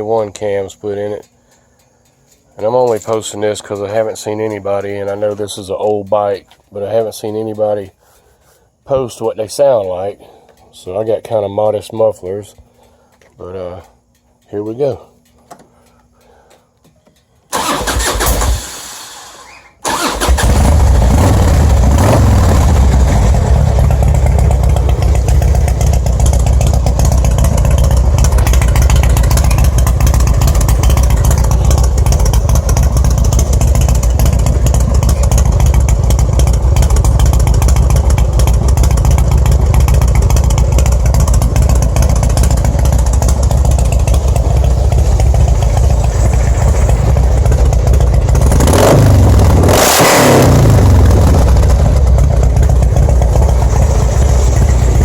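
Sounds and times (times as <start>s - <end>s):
motorcycle starter cranking: 17.5s - 55.0s
motorcycle engine revving and idling: 17.6s - 55.0s.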